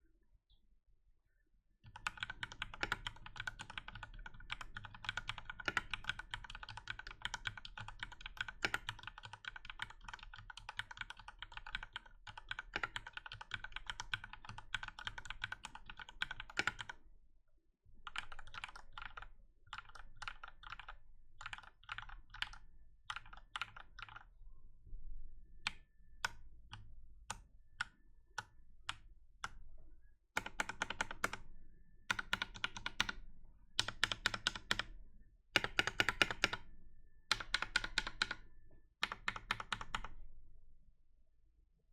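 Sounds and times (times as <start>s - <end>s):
mechanical keyboard typing: 1.9s - 17.0s, 18.0s - 24.3s, 30.4s - 31.4s, 32.1s - 33.2s, 33.8s - 34.9s, 35.6s - 36.7s, 37.3s - 38.4s, 39.0s - 40.1s.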